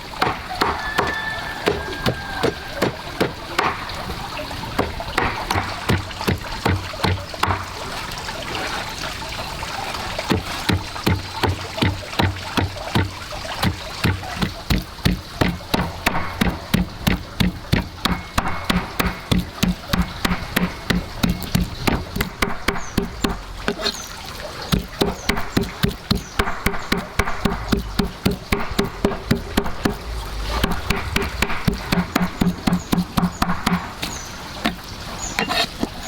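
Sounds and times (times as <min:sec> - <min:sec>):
rhythmic knocking with low ring: 0:04.8 - 0:07.9, 0:10.2 - 0:23.8, 0:24.7 - 0:34.1.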